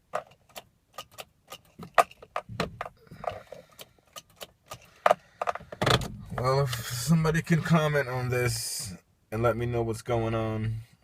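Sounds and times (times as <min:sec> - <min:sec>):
car keys clicking and jingling: 0:00.0 - 0:06.8.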